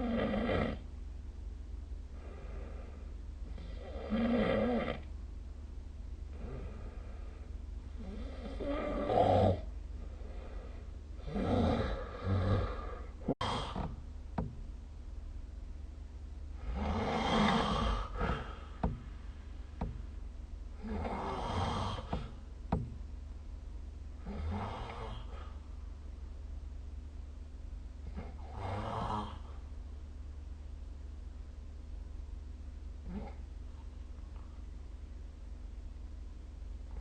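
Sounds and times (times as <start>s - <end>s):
steady low hum: 0.0s - 37.0s
person snoring: 2.2s - 5.1s, 6.3s - 13.9s, 16.6s - 18.9s, 20.8s - 22.4s, 24.2s - 25.5s.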